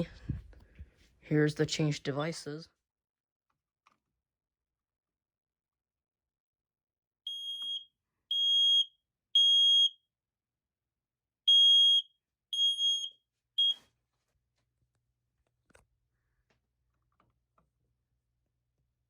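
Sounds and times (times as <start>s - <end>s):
alarm click: 7.3s - 7.8s
smoke alarm high-pitched beeps: 7.3s - 10.1s, 11.5s - 13.9s.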